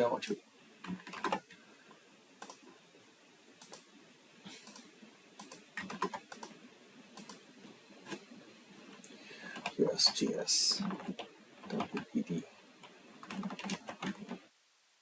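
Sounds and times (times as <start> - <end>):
typing on computer keyboard: 0.8 - 1.4, 4.6 - 6.6, 7.2 - 7.4, 10.8 - 12.1, 12.8 - 14.4.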